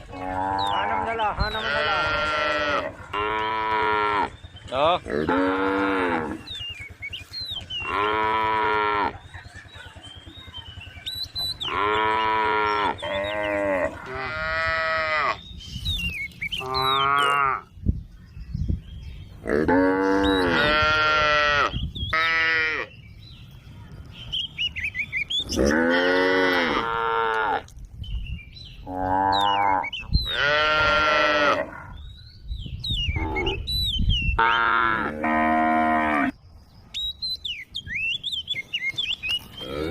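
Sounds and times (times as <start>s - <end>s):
cattle mooing: 0.0s - 4.4s, 5.0s - 6.5s, 7.8s - 9.2s, 11.7s - 15.4s, 16.6s - 17.6s, 19.4s - 22.9s, 25.5s - 27.7s, 28.8s - 32.0s, 34.4s - 36.3s, 39.6s - 39.9s
small birds chirping: 0.0s - 14.2s, 15.1s - 20.9s, 21.6s - 26.7s, 27.3s - 34.4s, 36.1s - 39.9s.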